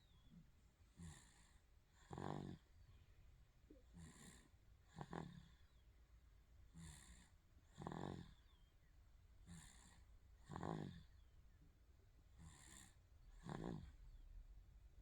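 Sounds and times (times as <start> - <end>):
baby snoring: 1.0 - 2.7, 3.9 - 5.8, 6.7 - 8.5, 9.5 - 11.2, 12.4 - 14.0.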